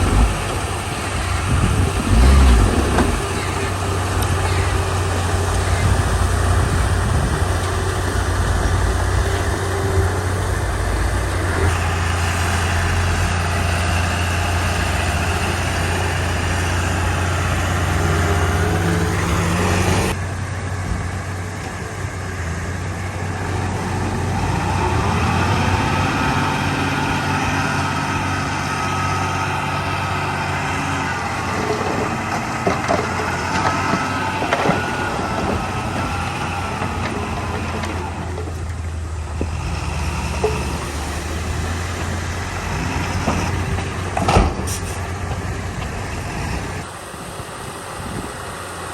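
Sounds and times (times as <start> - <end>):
bulldozer diesel engine running: 0.0 - 48.9.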